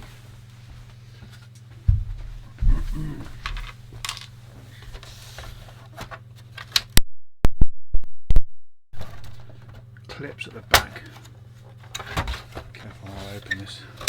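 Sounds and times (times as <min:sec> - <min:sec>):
dull knocks: 0:01.9 - 0:03.4.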